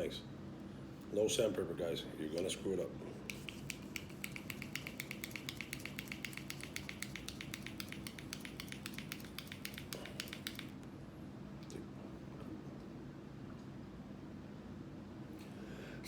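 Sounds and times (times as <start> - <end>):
steady low hum: 0.0 - 16.0
rapid even clicking: 3.3 - 10.8.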